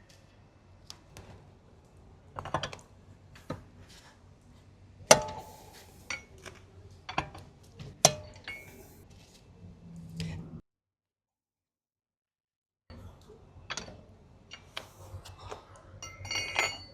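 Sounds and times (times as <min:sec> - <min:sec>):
lug wrench clinking on wheel bolts: 0:08.0 - 0:08.9, 0:16.0 - 0:16.9.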